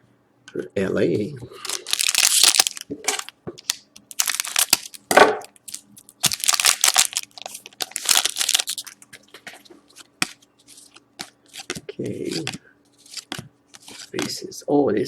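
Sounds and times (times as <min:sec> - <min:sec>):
foil wrapper crinkling and tearing: 0:01.6 - 0:09.1, 0:10.7 - 0:14.3.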